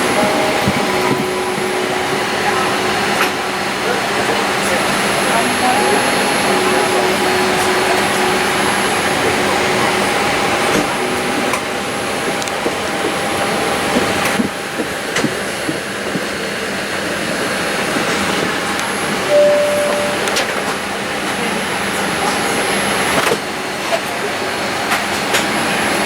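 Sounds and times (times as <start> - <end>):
short steady tone: 19.3 - 20.7.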